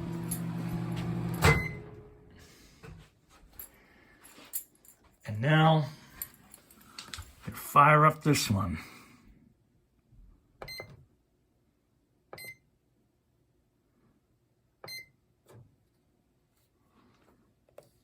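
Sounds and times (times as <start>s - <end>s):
microwave keypad beeps: 10.6s - 10.9s, 12.4s - 12.6s, 14.9s - 15.1s.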